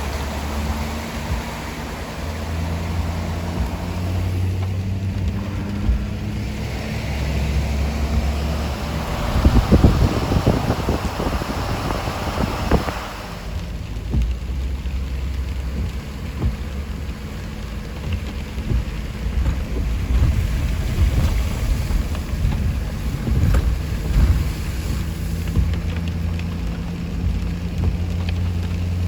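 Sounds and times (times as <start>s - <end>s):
loud rushing noise: 0.0s - 14.4s
road rumble: 0.0s - 29.0s
vehicle engine droning: 0.0s - 29.0s.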